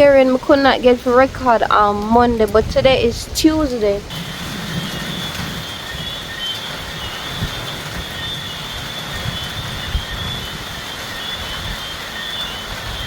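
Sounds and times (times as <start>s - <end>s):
heavy rain: 0.0s - 13.0s
wind rumbling on microphone: 0.0s - 13.0s
high chirping: 3.8s - 13.0s.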